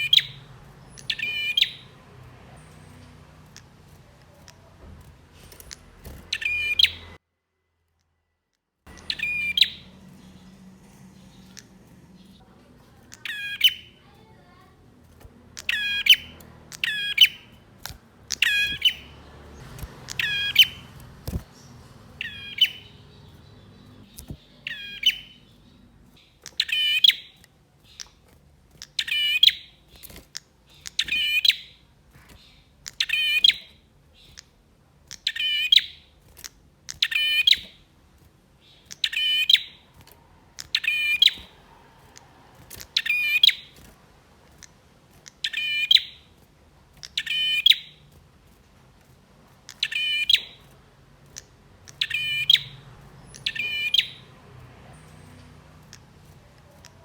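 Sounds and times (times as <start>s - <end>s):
bird calling buzzy notes: 8.9s - 12.4s, 15.5s - 25.9s, 51.4s - 54.3s.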